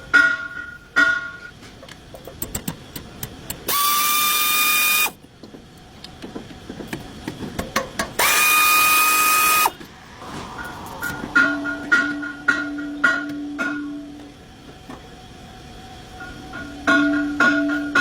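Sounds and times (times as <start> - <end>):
power drill whirring: 3.7 - 5.2, 8.2 - 9.8.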